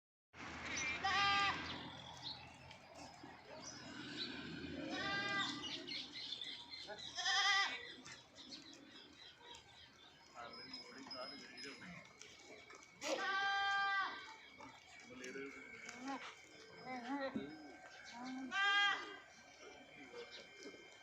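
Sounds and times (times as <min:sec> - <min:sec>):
goats bleating: 0:00.8 - 0:01.8, 0:03.8 - 0:05.9, 0:07.0 - 0:08.2, 0:13.0 - 0:14.3, 0:18.3 - 0:19.3.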